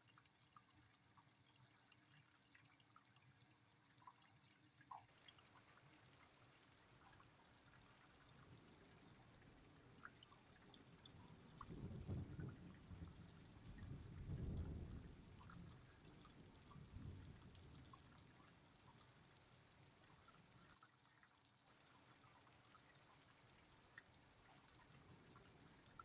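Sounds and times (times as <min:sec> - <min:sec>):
quiet rain: 0:00.0 - 0:26.0
water drips: 0:00.0 - 0:26.0.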